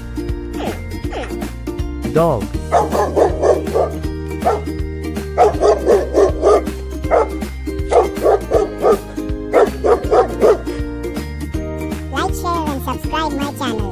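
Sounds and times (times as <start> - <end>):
background music: 0.0 - 13.9
dog barking: 2.7 - 4.7, 5.4 - 10.8.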